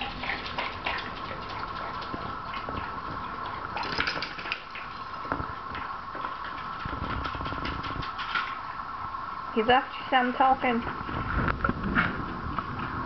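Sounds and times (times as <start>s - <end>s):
dog lapping water: 0.0s - 8.9s
faint steady hum: 0.0s - 13.0s.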